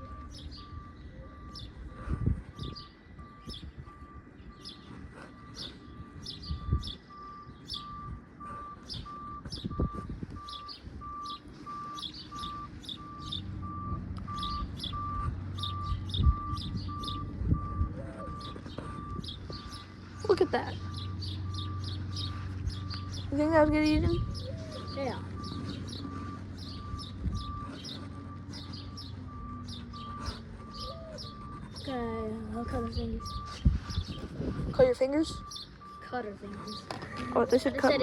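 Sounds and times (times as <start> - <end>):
birds chirping: 0.0 - 38.0
low engine hum: 0.0 - 38.0
vehicle backup alarm beeping: 0.0 - 38.0.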